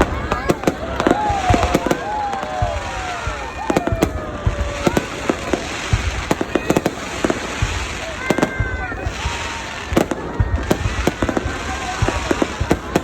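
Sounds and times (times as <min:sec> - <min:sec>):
fireworks bangs and cracks: 0:00.0 - 0:13.0.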